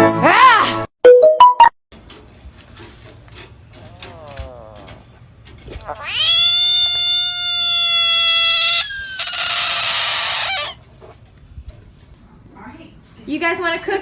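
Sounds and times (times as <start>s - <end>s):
cat yowling: 5.7s - 10.8s.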